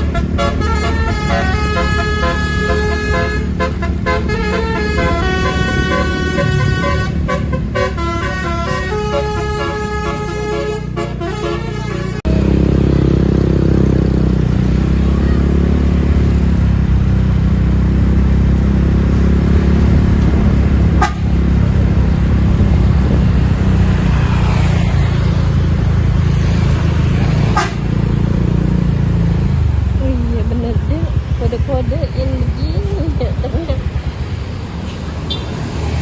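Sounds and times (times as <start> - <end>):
multi-tone bus horn tune: 0.0 - 12.7, 20.8 - 21.6, 27.4 - 28.0
bus engine rumbling: 0.0 - 36.0.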